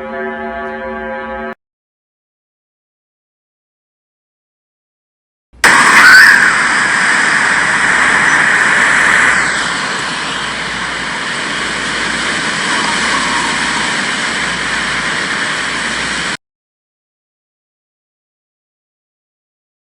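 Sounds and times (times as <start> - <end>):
faint falling tone: 5.6 - 15.6
dense rushing hiss: 5.6 - 16.4.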